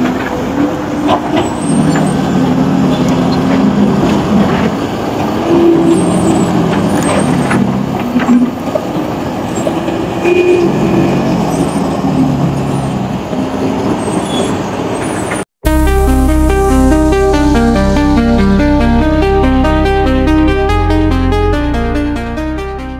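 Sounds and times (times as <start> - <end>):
excavator diesel engine under load: 0.0 - 10.2
electronic music with steady beat: 15.6 - 22.9.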